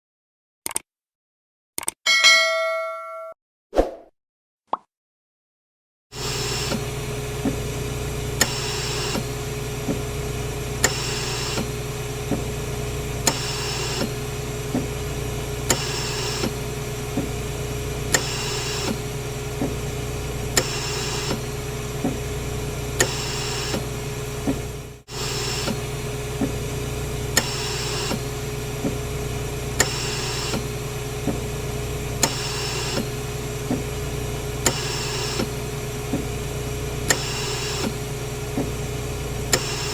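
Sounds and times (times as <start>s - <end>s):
sharp clicks: 0.6s - 0.9s, 1.8s - 2.0s
ventilator hum and tone: 6.2s - 39.9s.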